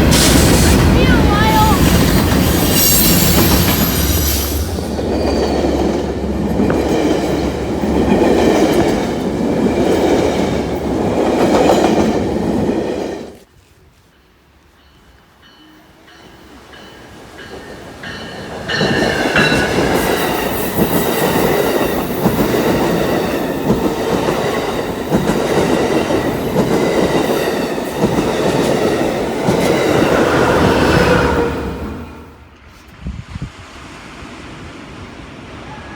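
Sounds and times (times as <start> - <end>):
train rumbling past: 0.0 - 35.9
high-pitched wheel squeal on rails: 2.4 - 5.7.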